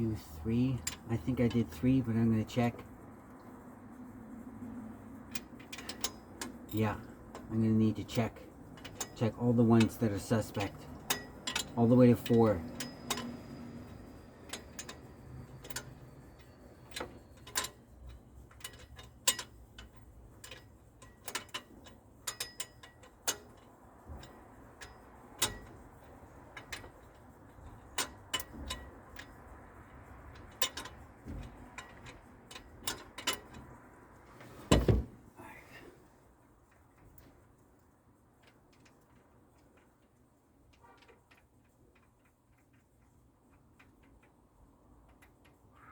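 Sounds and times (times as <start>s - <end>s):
ratchet wrench clicking: 5.1s - 34.2s.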